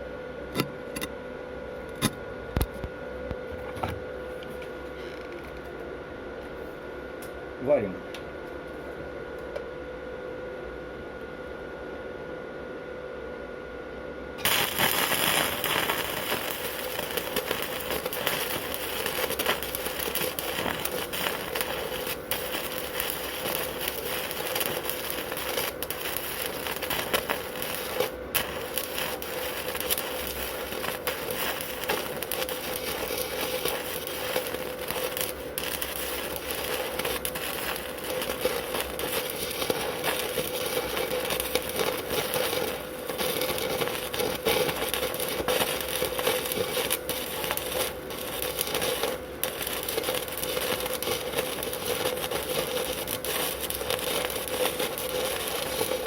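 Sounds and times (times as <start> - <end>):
welding arc crackling: 14.4 - 56.0.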